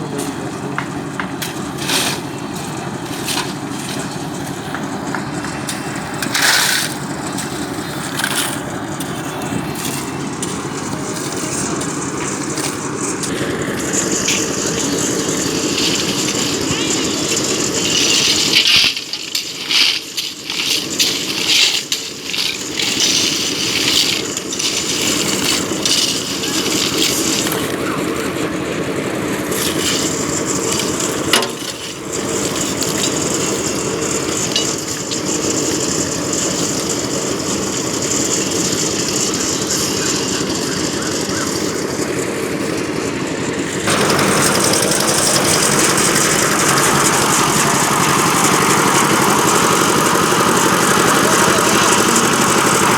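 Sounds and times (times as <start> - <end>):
concrete mixer engine drone: 0.0 - 52.9
knocks and clatter: 0.1 - 28.2, 29.4 - 40.7.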